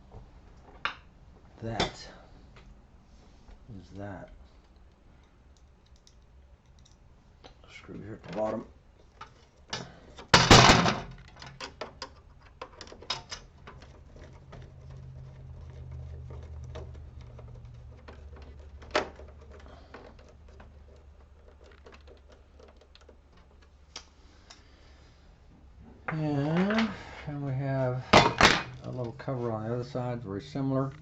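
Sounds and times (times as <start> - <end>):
loud rattling clatter: 10.3 - 11.3.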